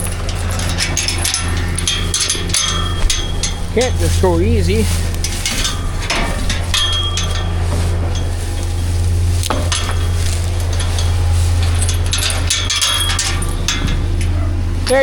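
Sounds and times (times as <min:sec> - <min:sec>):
metal gate and chain clanking: 0:00.0 - 0:15.0
steady low hum: 0:00.0 - 0:15.0
sharp knocks: 0:01.2 - 0:04.0.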